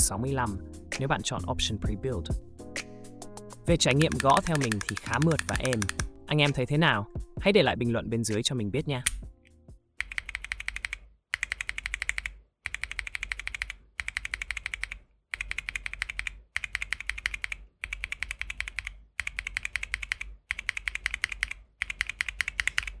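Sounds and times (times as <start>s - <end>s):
fast typing on mechanical keyboard: 3.7s - 6.1s, 10.0s - 23.0s.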